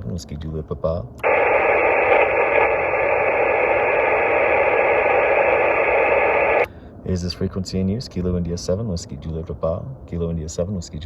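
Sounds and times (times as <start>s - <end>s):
radio static hiss: 1.2s - 6.7s.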